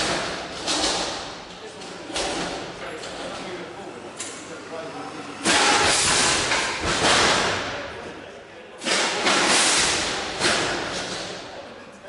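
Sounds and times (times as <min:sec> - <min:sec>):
combat robots crashing: 0:05.4 - 0:08.0, 0:08.8 - 0:11.3.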